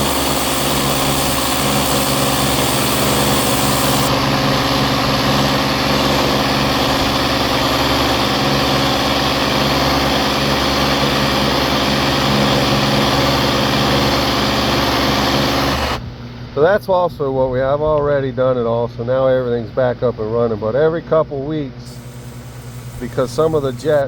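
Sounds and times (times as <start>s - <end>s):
water spraying hiss: 0.0s - 14.5s, 21.9s - 24.0s
motor hum: 0.0s - 16.5s, 21.9s - 24.0s.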